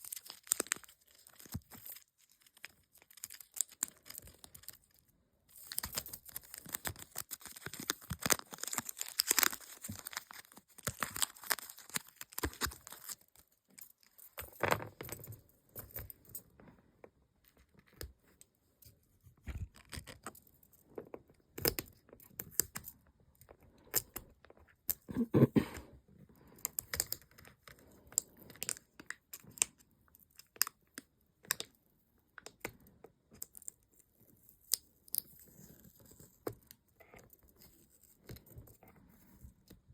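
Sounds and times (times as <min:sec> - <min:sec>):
sticker sheets crinkling and tearing: 0:00.0 - 0:05.0, 0:05.6 - 0:13.4.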